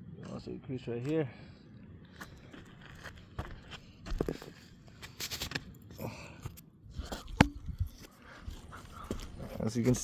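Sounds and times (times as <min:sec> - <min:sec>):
footsteps on roof shingles: 0:02.2 - 0:05.7.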